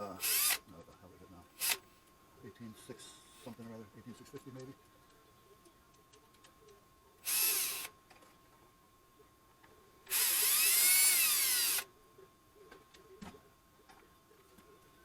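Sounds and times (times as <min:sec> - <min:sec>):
cordless drill driving screws: 0:00.2 - 0:00.6, 0:07.2 - 0:07.9, 0:10.1 - 0:11.8.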